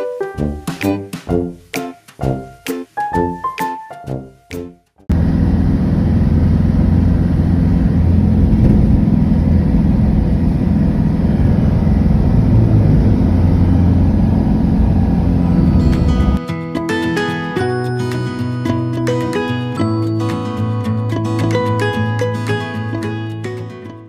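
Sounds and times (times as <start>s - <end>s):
road vehicle rumble: 5.1s - 16.4s.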